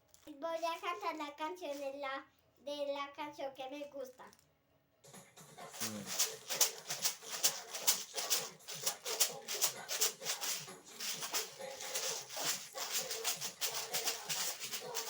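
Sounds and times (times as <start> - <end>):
maracas shaken: 5.5 - 15.0.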